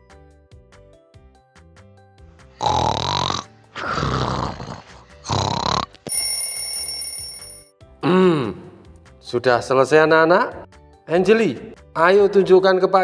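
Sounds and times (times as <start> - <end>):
light background music: 0.0 - 13.0
cartoon snoring: 2.6 - 6.1.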